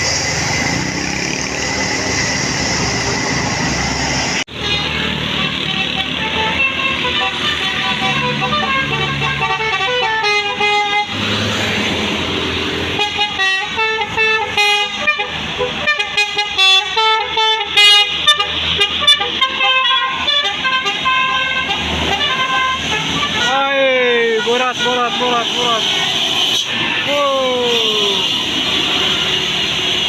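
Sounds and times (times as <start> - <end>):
bus horn playing a tune: 4.5 - 11.2, 12.9 - 26.7.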